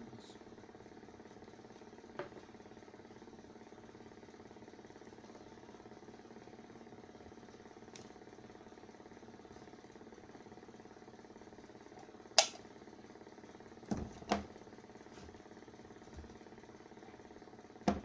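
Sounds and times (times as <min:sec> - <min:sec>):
low mechanical hum: 0:00.0 - 0:18.0
sharp click: 0:12.4 - 0:12.6.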